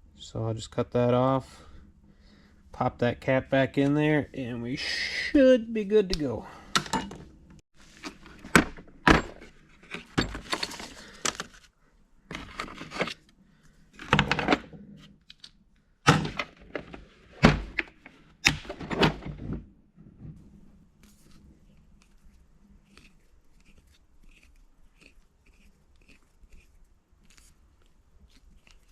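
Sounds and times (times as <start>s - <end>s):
metal tools knocking and clattering: 6.8s - 7.2s.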